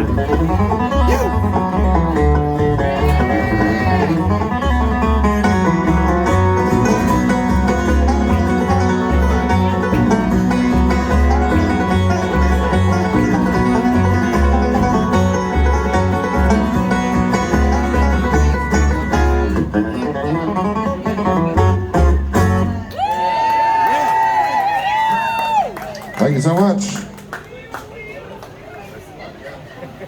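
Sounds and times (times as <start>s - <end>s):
banjo picking: 0.0s - 22.9s
bass line: 0.0s - 22.9s
guitar picking: 0.0s - 22.9s.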